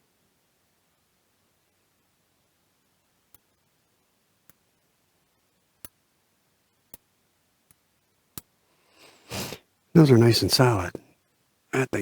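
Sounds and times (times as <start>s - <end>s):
small tool clicking on connector: 5.8s - 6.0s.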